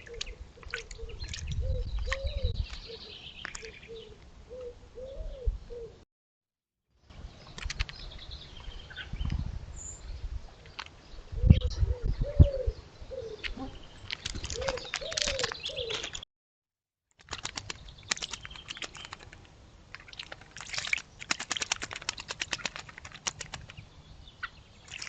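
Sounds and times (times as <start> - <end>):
pigeon cooing: 3.9 - 6.0, 11.4 - 13.8, 14.6 - 16.1
birds clicking and rustling: 7.5 - 8.0, 14.0 - 16.2, 17.2 - 23.9
birds flapping: 14.1 - 16.2, 17.2 - 23.8.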